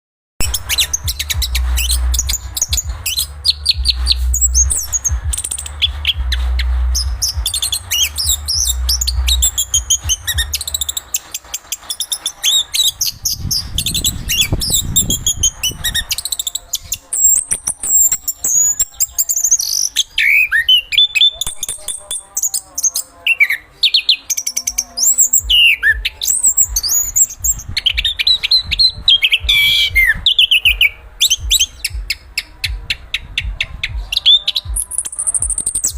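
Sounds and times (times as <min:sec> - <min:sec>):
low rumble: 0:00.4 - 0:11.0
thrush singing: 0:00.4 - 0:35.9.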